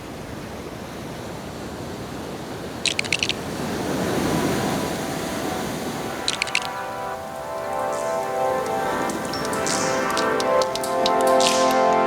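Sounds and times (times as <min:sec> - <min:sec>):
steady rushing noise: 0:02.6 - 0:12.0
sharp clicks: 0:02.8 - 0:03.4, 0:06.2 - 0:06.8, 0:08.6 - 0:12.0.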